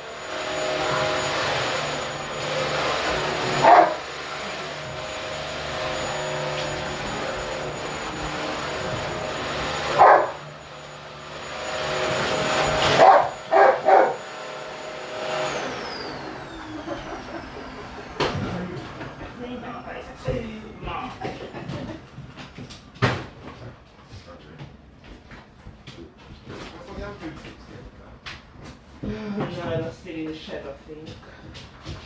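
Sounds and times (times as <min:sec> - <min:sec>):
dishwasher humming: 0:00.0 - 0:22.0
dog barking: 0:03.6 - 0:04.0, 0:10.0 - 0:10.4, 0:13.0 - 0:14.2.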